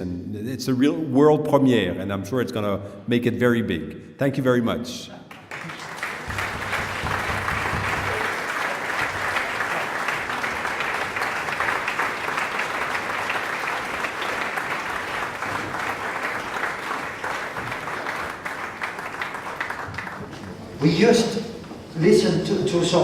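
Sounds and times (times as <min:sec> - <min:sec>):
audience clapping: 0:05.3 - 0:20.9.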